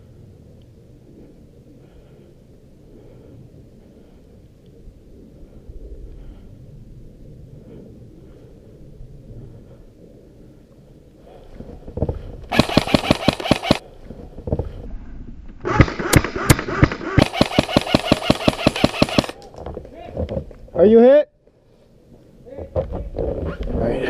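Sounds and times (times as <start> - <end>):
low rumble of wind: 0.0 - 24.0
airsoft rifle full-auto bursts: 12.5 - 13.8, 15.7 - 19.4.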